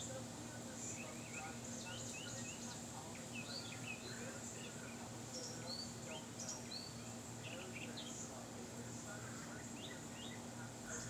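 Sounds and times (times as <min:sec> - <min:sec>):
small birds chirping: 0:00.9 - 0:08.2, 0:09.6 - 0:11.0.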